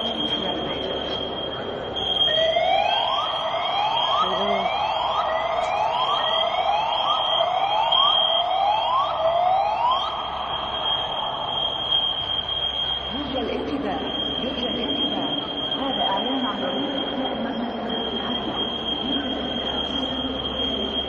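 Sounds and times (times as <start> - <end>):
fire alarm whoop: 0.0 - 21.0
steady high-pitched tone: 0.0 - 21.0.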